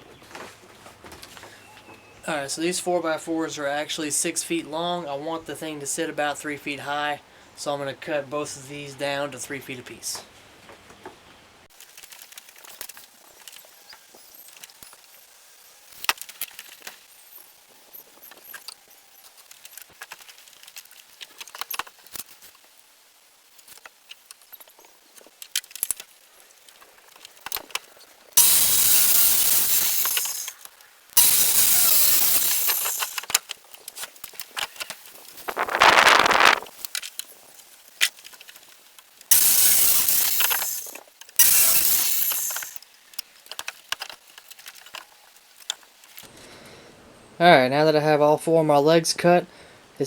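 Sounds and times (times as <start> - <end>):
circular saw cutting wood: 28.4 - 30.6, 31.2 - 33.3, 39.3 - 42.8.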